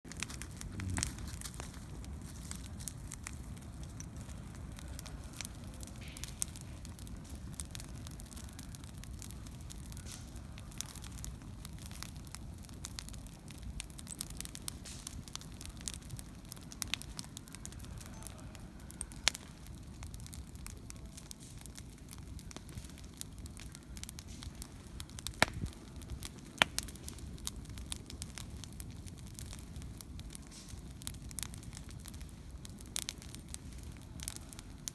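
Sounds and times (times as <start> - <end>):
campfire crackling and popping: 0.1 - 34.9
low rumble: 0.2 - 7.5.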